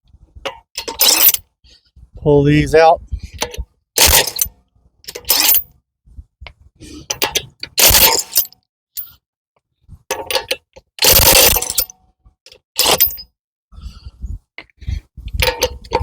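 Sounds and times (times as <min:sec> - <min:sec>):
impact wrench bursts: 0:03.4 - 0:04.5, 0:07.2 - 0:08.4, 0:10.4 - 0:11.9.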